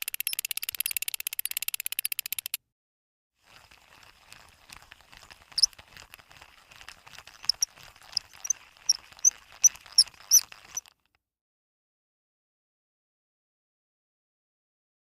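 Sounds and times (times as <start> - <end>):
high squeaky clicks: 0.0 - 2.6, 4.7 - 6.2, 6.8 - 11.0.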